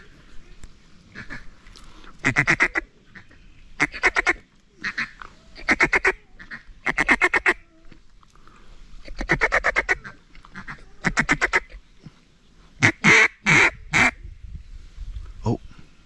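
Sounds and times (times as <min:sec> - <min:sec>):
ducks quacking: 0:01.0 - 0:01.6, 0:02.2 - 0:07.6, 0:09.0 - 0:11.8, 0:12.8 - 0:14.2.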